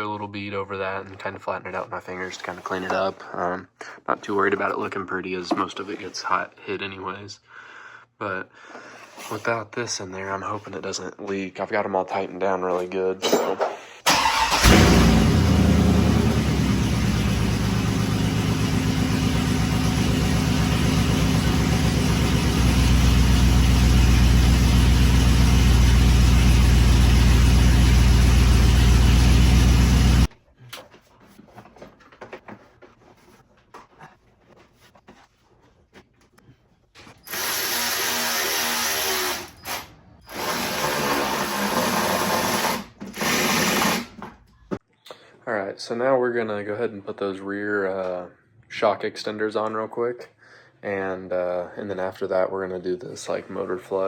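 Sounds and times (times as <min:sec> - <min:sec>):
power tool bursts: 0:14.1 - 0:15.8, 0:37.2 - 0:44.2
vee eight engine running: 0:14.2 - 0:30.3.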